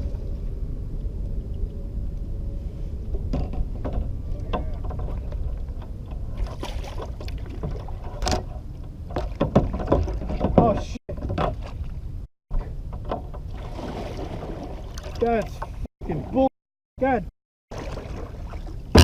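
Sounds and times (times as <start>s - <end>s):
wind rumbling on microphone: 0.0s - 15.0s
kayak knocks and splashes: 6.3s - 8.4s, 9.1s - 12.0s, 13.1s - 15.4s, 17.7s - 19.0s.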